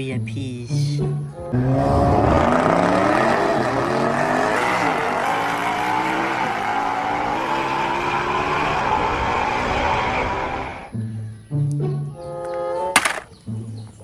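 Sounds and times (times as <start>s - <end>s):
car engine accelerating: 1.0s - 10.9s.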